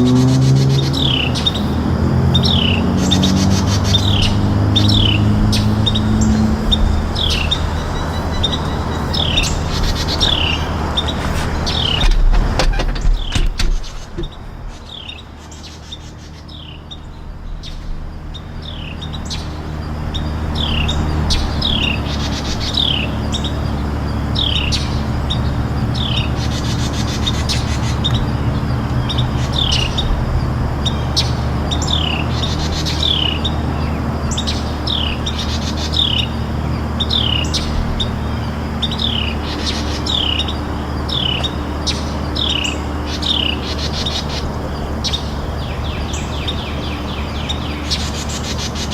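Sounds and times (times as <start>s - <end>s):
bird chirping: 0.0s - 48.9s
low mechanical hum: 0.0s - 48.9s.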